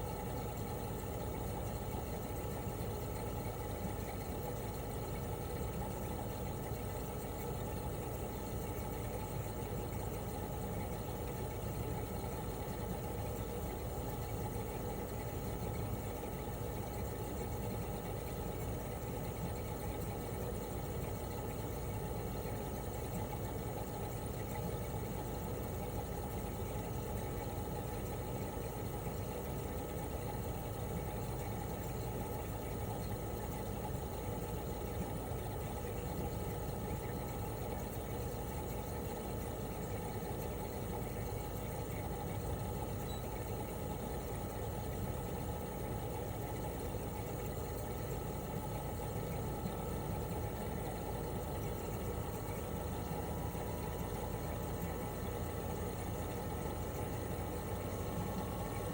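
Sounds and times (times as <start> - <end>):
air conditioner compressor humming: 0.0 - 58.9.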